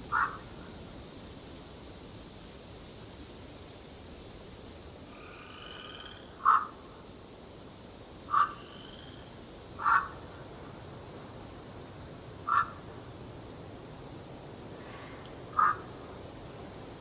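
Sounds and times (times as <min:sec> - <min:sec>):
steady background hiss: 0:00.0 - 0:17.0
loud animal calls: 0:00.1 - 0:00.4, 0:05.3 - 0:06.8, 0:08.3 - 0:09.1, 0:09.8 - 0:10.2, 0:12.5 - 0:12.8, 0:15.6 - 0:15.9.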